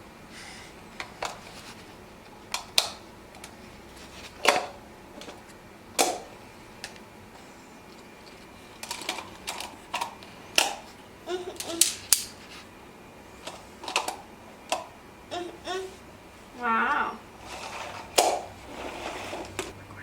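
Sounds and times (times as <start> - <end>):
plastic tiles clacking together: 11.6 - 12.3.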